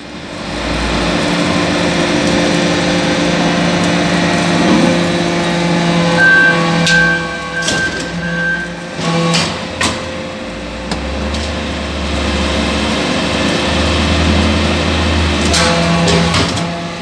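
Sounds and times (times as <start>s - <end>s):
hydraulic press motor drone: 0.0s - 17.0s
deep hum: 2.8s - 6.8s.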